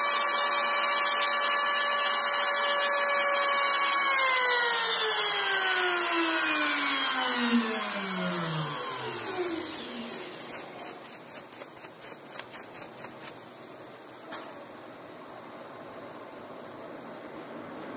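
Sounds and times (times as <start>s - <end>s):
router spindle whine winding down: 0.0s - 10.7s.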